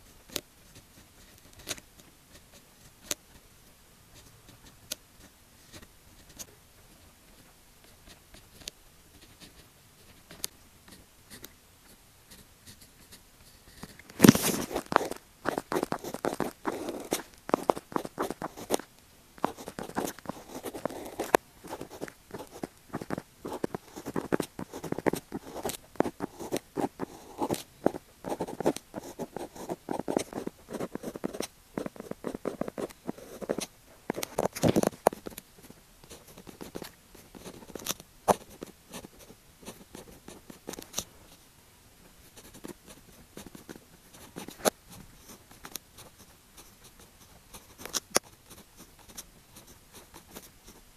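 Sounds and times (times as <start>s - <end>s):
pen scratching on paper: 8.0s - 35.4s, 36.1s - 41.0s, 42.3s - 50.8s.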